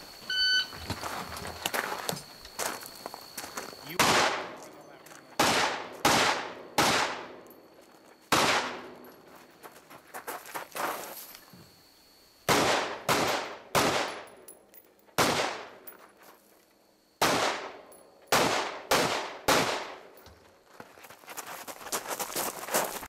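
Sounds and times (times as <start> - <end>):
rifle shots echoing: 3.9 - 4.6, 5.4 - 7.4, 8.3 - 9.0, 12.5 - 14.3, 15.2 - 15.8, 17.2 - 20.1.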